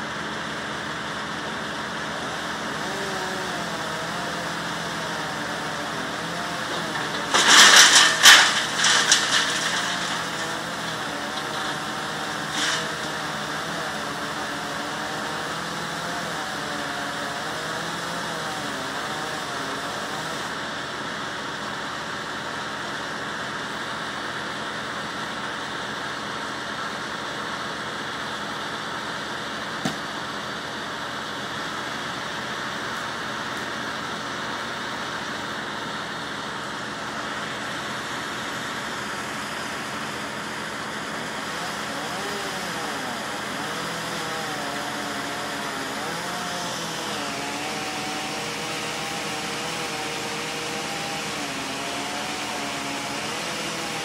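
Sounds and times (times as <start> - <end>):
engine running: 0.0 - 54.0
loud crashing noise: 6.9 - 12.8.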